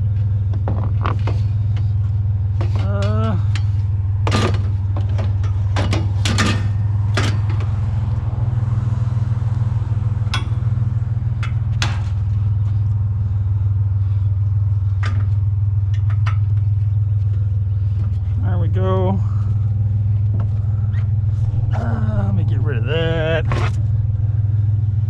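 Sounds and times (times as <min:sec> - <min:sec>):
vehicle engine idling: 0:00.0 - 0:25.0
metal clanks and knocks: 0:00.5 - 0:07.8, 0:11.3 - 0:12.6, 0:15.0 - 0:18.4.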